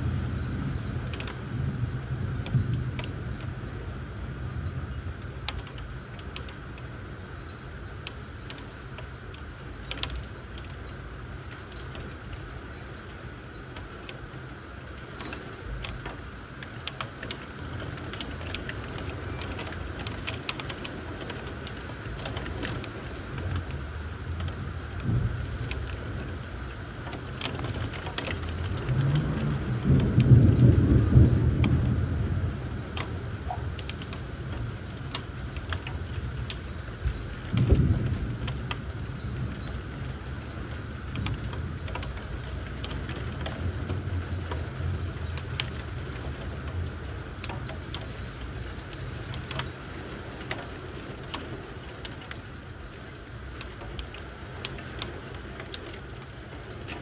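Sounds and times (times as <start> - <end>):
thunder rolling: 0.0 - 6.2, 17.6 - 50.0
raindrops ticking on a surface: 0.0 - 57.0
steady rain: 0.0 - 57.0.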